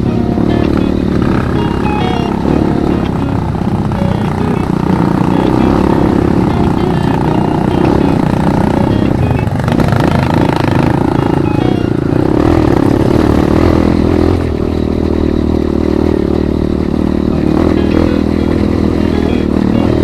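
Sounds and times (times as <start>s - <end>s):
motorcycle engine running: 0.0s - 20.0s.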